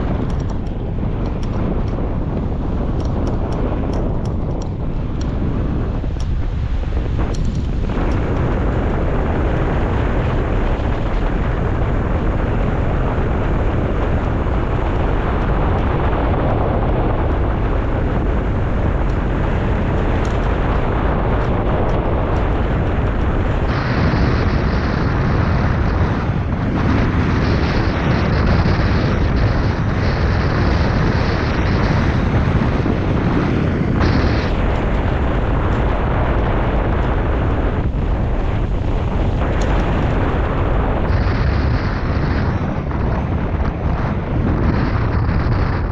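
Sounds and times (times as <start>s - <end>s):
wind buffeting microphone: 0.0s - 45.9s.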